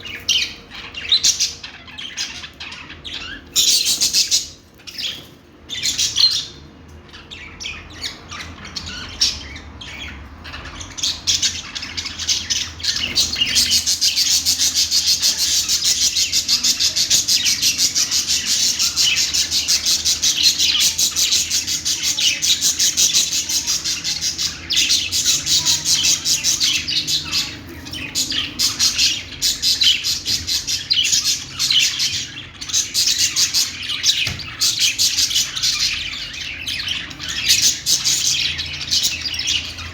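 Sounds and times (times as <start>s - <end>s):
budgerigars chattering and chirping: 0.0s - 39.9s.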